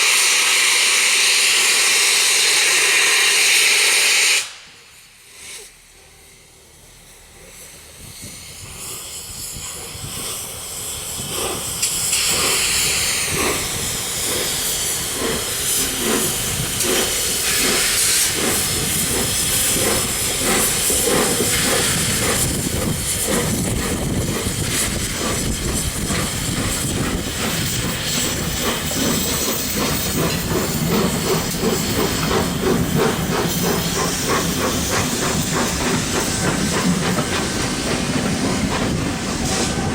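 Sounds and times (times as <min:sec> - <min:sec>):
steam hiss: 0:00.0 - 0:39.9
steam locomotive exhaust beats: 0:00.0 - 0:39.9.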